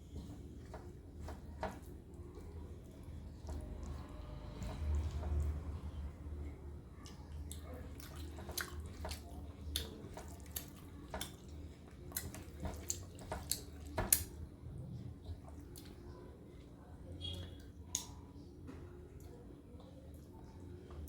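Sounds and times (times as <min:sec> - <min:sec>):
low steady hum: 0:00.0 - 0:21.0
person eating with wet smacks: 0:07.0 - 0:16.0.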